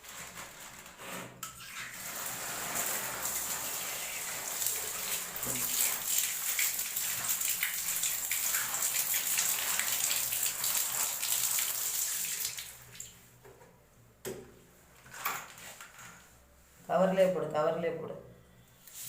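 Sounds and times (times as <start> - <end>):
water running and splashing: 1.7 - 13.2.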